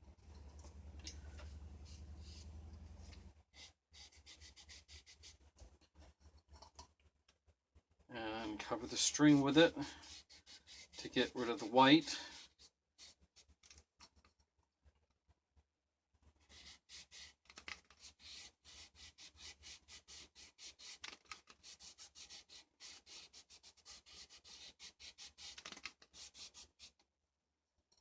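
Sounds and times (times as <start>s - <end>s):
scratchy rubbing strokes: 1.3s - 5.7s, 8.2s - 13.6s, 16.4s - 27.0s.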